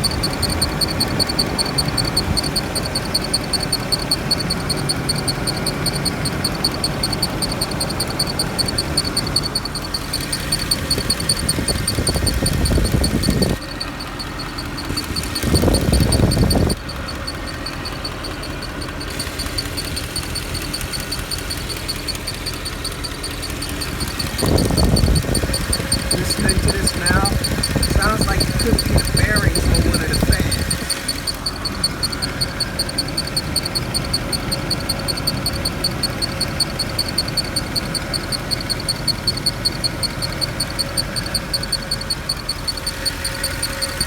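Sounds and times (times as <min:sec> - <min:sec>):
pulsing high-pitched whine: 0:00.0 - 0:13.6, 0:19.0 - 0:44.0
car engine idling: 0:00.0 - 0:44.0
low rumbles: 0:20.6 - 0:34.1.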